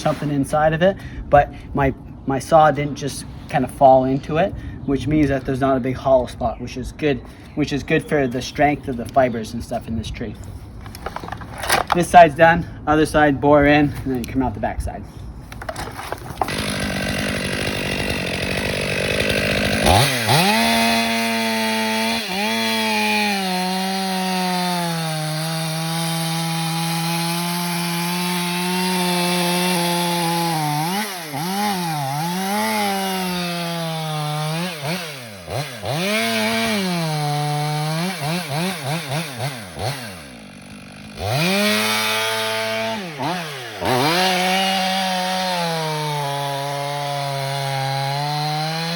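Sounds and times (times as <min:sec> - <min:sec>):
chainsaw cutting wood: 0:15.6 - 0:48.9.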